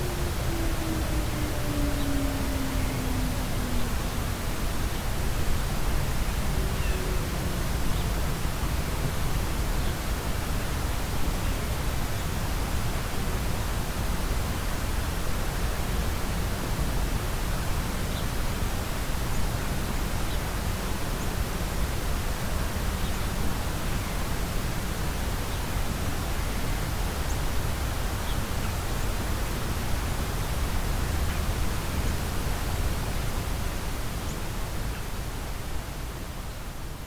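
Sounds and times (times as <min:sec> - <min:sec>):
low rumble: 0:00.0 - 0:09.9.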